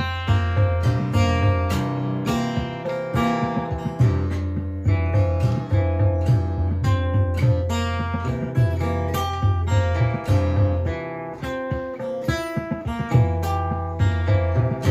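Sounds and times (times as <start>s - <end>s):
steady bass: 0.0s - 11.0s
strummed acoustic guitar music: 0.0s - 14.9s.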